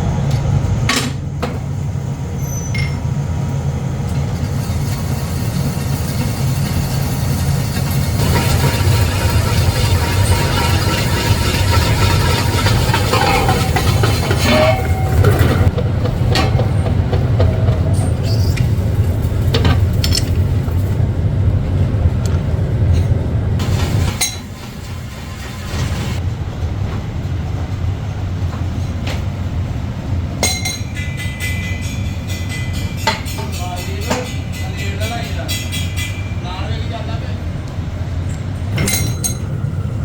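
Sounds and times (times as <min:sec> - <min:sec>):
machinery droning: 0:03.0 - 0:30.2.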